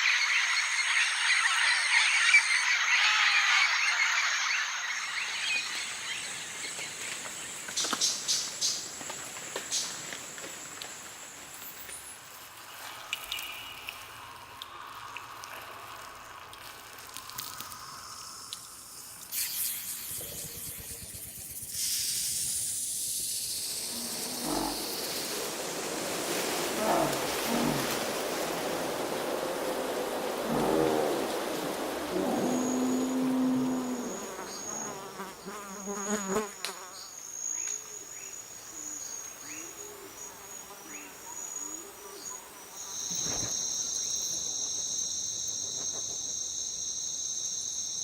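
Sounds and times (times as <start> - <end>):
high steady hiss: 0.0 - 48.0
insect chorus: 0.0 - 48.0
frog chorus: 23.8 - 25.5, 30.3 - 35.0.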